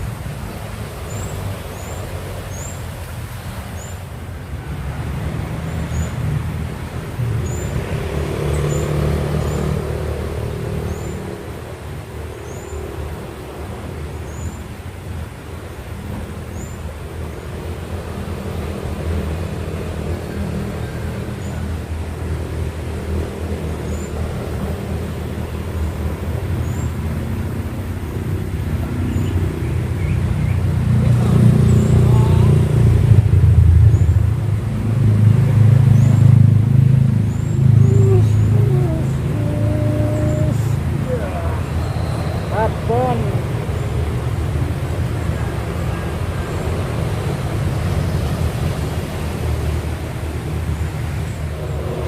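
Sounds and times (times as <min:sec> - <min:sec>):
motor engine running: 0:30.0 - 0:52.0.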